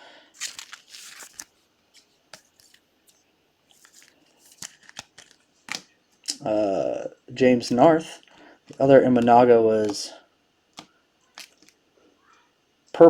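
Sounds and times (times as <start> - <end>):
trading cards rustling and clicking: 0.4 - 6.4, 8.7 - 10.1, 10.8 - 11.8.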